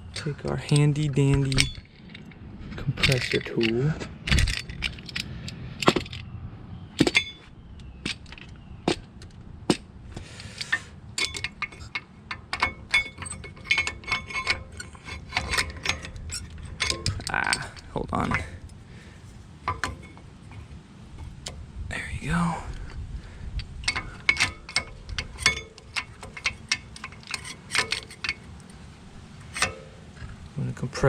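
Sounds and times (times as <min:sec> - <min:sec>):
metal tool clicking and clinking: 0:00.7 - 0:02.4, 0:07.0 - 0:09.4, 0:10.4 - 0:18.8, 0:19.6 - 0:21.6, 0:23.6 - 0:28.8, 0:29.4 - 0:30.3.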